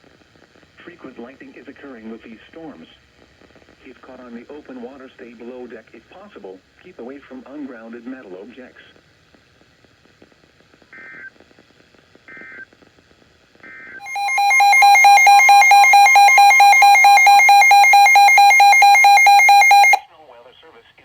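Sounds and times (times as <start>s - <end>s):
short digital header bursts: 14.0s - 20.0s.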